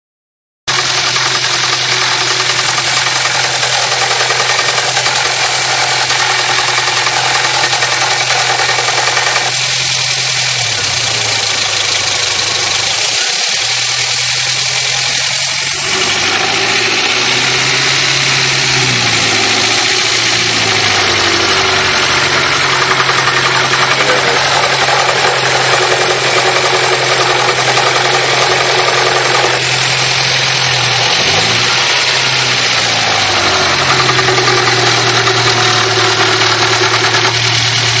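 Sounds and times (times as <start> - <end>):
car engine revving: 0.7 - 38.0.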